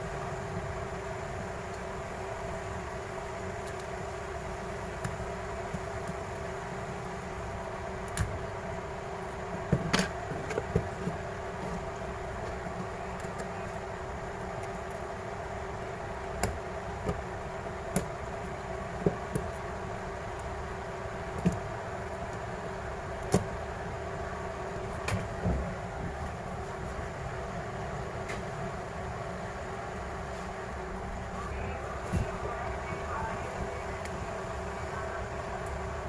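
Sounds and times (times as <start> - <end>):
steady background hum: 0.0 - 36.0.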